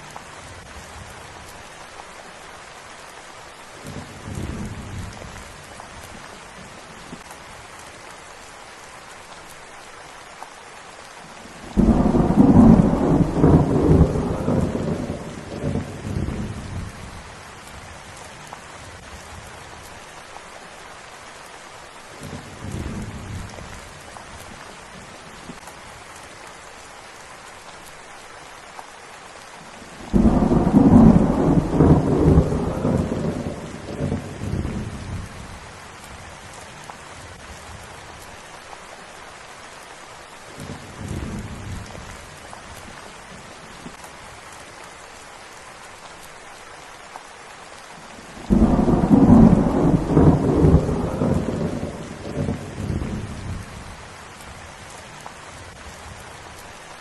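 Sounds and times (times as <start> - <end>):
steady rain: 0.0 - 57.0
distant thunder rumble: 11.6 - 17.2, 30.0 - 35.6, 48.3 - 54.6
thunder claps: 11.8 - 16.9, 30.1 - 35.3, 48.4 - 53.7.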